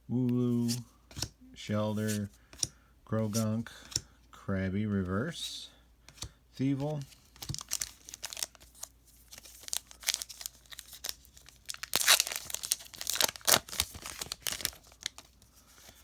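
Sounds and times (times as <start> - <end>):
foil wrapper crinkling and tearing: 7.4 - 15.4.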